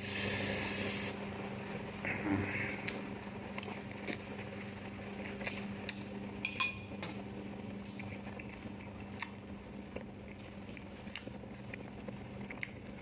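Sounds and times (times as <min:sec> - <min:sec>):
steady low hum: 0:00.0 - 0:13.0
utensils clinking against a dish: 0:06.4 - 0:07.2.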